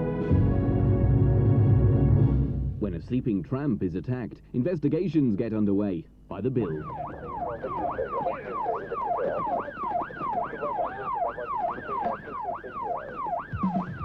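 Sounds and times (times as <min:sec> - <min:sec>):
siren yelping: 0:06.6 - 0:14.0.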